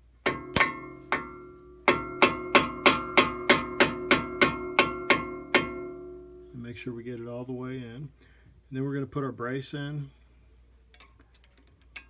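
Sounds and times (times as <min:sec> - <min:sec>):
hammer striking metal pin: 0:00.2 - 0:06.6.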